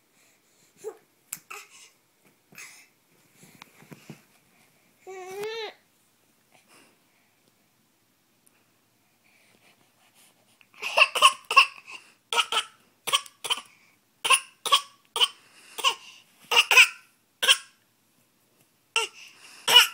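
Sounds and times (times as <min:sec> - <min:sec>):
baby fake-coughing: 0:10.8 - 0:17.8, 0:19.0 - 0:19.9.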